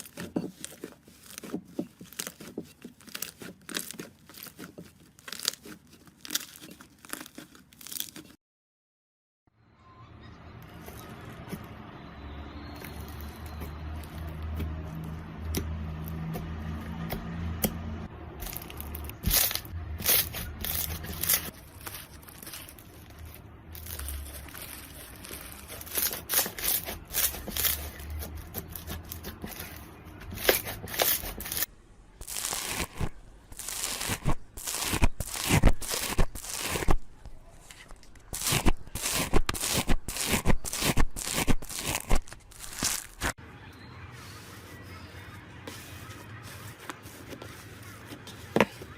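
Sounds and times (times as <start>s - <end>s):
slime crackling and popping: 0.0s - 8.4s, 18.4s - 29.5s, 30.4s - 37.0s, 38.0s - 43.4s.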